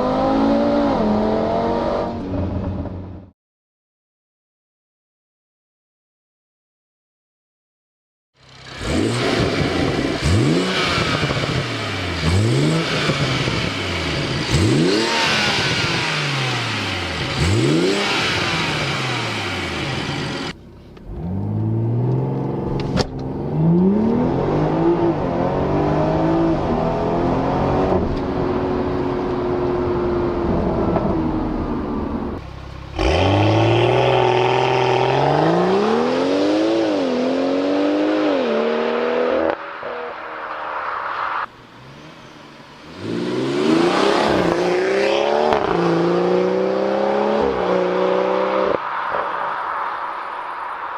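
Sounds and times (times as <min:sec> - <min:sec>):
car engine revving: 0:08.4 - 0:50.9
car accelerating through gears: 0:32.9 - 0:39.6, 0:41.8 - 0:48.8.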